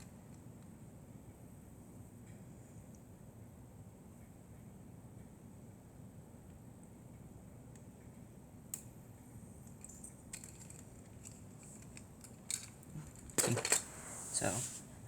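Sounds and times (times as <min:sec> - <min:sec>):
low room hum: 0:00.0 - 0:15.0
small plastic pieces clicking: 0:10.3 - 0:13.8.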